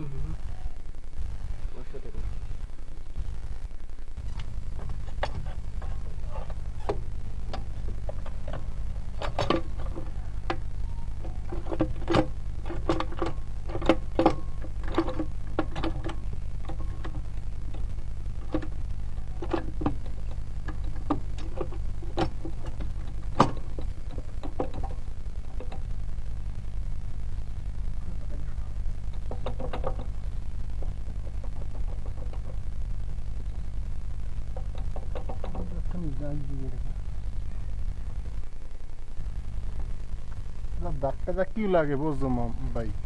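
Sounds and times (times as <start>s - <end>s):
steady low hum: 0.0s - 43.0s
metallic clicks and knocks: 4.3s - 25.9s, 29.1s - 30.2s, 30.8s - 32.6s, 34.5s - 35.9s.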